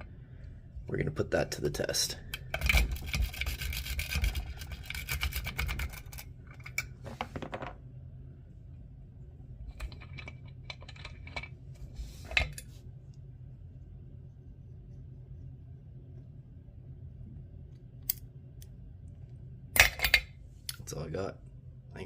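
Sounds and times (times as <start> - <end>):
lock pick clicking and scratching: 2.4 - 6.7.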